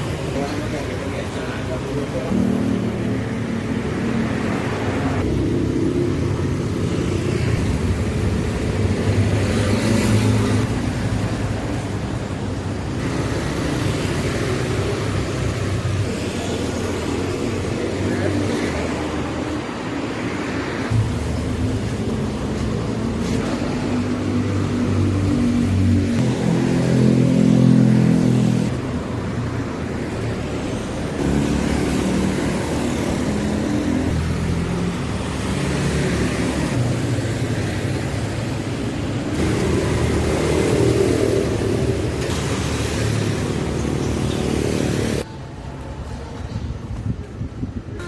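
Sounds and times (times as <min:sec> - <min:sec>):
road noise: 0:00.0 - 0:48.0
vehicles passing: 0:00.0 - 0:48.0.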